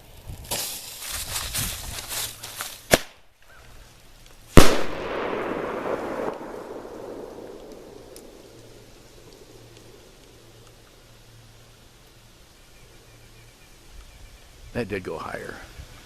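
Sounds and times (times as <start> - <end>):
firework launch crackle and pop: 0.0 - 11.0
firework bang with echo: 4.6 - 8.5.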